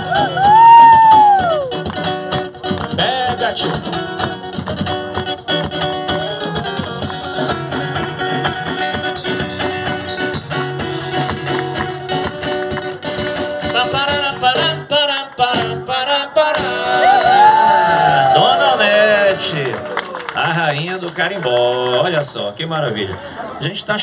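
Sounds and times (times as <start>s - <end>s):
person singing: 0.0s - 1.8s, 13.7s - 20.0s
band playing music: 0.0s - 15.8s, 16.5s - 20.2s.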